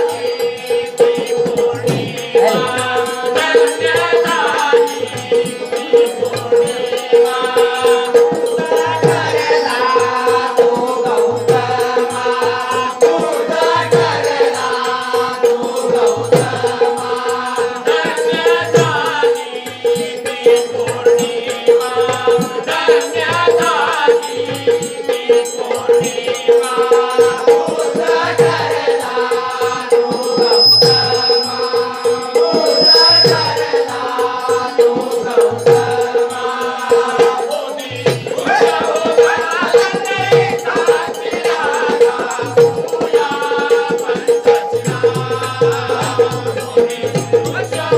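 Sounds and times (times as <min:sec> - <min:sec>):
drum beats: 0:00.0 - 0:06.9
rattling percussion: 0:00.0 - 0:47.9
voices singing devotional song: 0:00.0 - 0:47.9
held drone note: 0:29.3 - 0:34.9.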